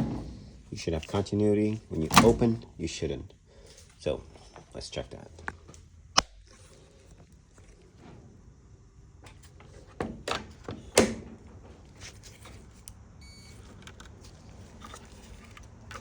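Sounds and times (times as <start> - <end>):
faint beep: 13.2 - 13.6.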